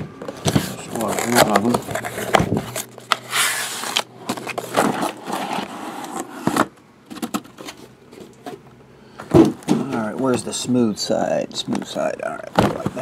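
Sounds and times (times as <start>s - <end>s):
plastic packaging rustle: 0.4s - 5.7s
cardboard boxes knocking and clicking: 9.2s - 10.1s, 12.4s - 13.0s.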